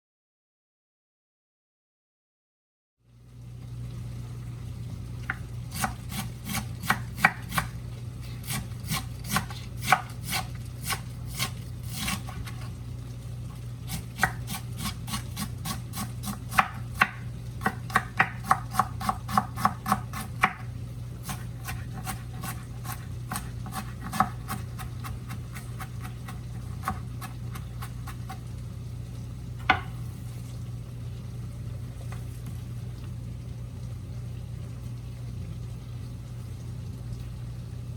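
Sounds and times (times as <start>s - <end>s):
knife chopping cabbage: 5.7s - 12.6s, 13.9s - 28.4s.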